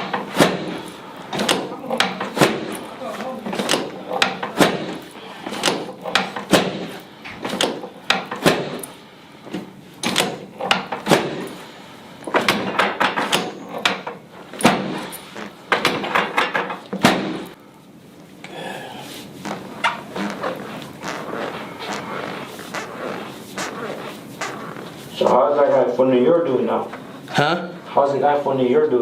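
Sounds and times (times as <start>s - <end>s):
knocks and thuds on treatment table: 0.0s - 2.8s, 3.4s - 8.9s, 9.5s - 11.6s, 12.3s - 17.6s.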